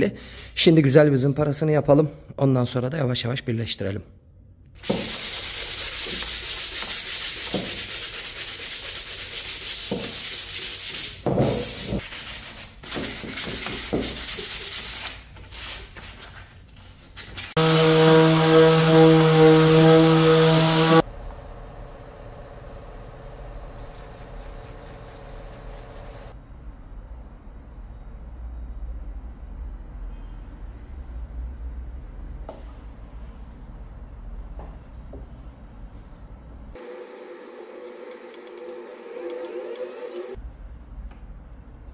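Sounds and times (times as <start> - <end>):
power sander rasping: 17.6 - 21.0, 23.7 - 26.3, 36.8 - 40.4
machine hum: 17.6 - 26.4.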